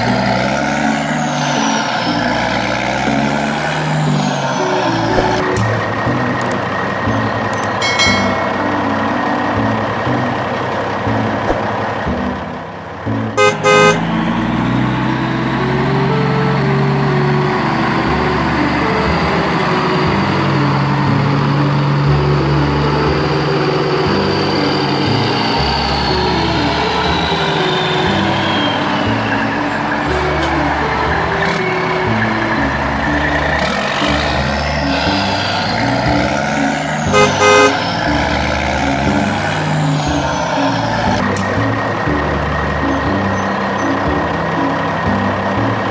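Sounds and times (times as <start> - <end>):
upbeat background music: 0.0 - 45.9
vehicle engine rumble: 0.0 - 45.9
car horn honks: 13.4 - 14.0, 37.1 - 37.9.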